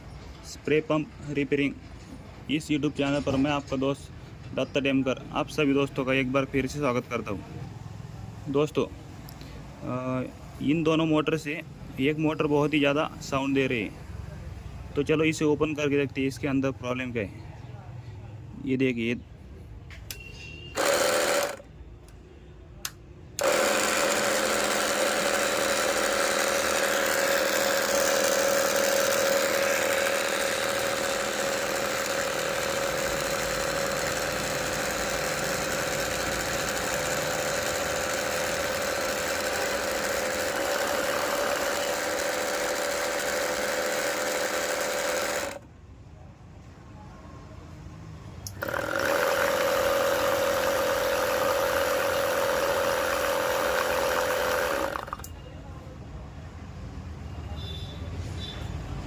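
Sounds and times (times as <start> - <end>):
electric pump motor whining: 20.7 - 21.7, 23.4 - 45.6, 48.5 - 55.4.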